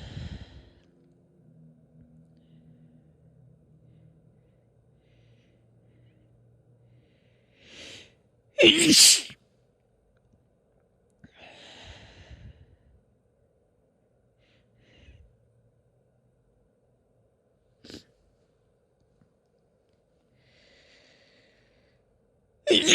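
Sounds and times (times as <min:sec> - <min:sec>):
woman sneezing: 0:08.6 - 0:09.4, 0:22.7 - 0:22.9.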